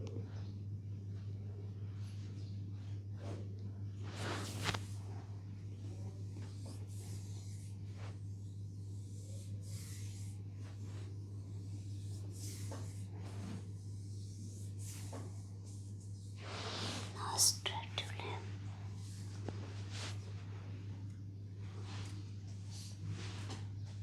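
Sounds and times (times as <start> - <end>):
steady low hum: 0.0 - 24.0
hands rubbing skin: 4.1 - 5.0.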